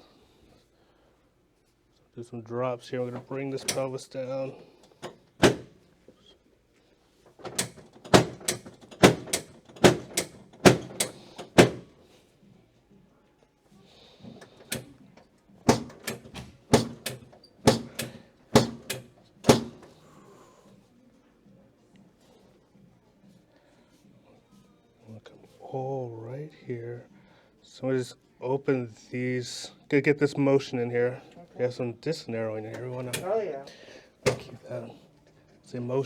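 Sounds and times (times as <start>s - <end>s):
drop table section clacking down: 3.6s - 3.9s.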